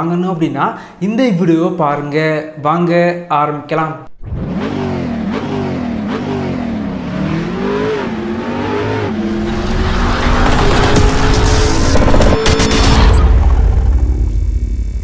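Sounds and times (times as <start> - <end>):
car engine revving: 4.2 - 14.8.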